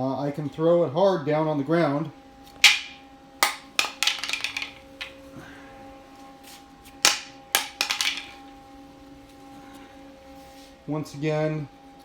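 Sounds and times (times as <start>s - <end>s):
plastic panel clacking on concrete: 2.6s - 5.2s, 7.1s - 8.4s.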